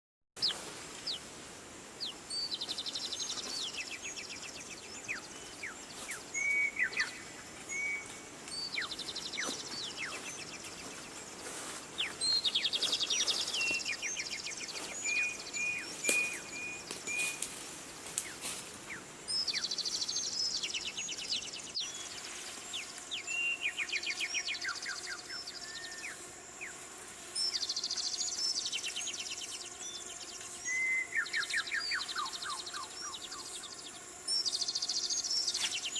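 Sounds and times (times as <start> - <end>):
birds trilling song: 0.4 - 1.3, 1.9 - 35.9
background hiss: 0.4 - 35.9
whistled bird chirps: 6.4 - 10.2, 30.7 - 33.4.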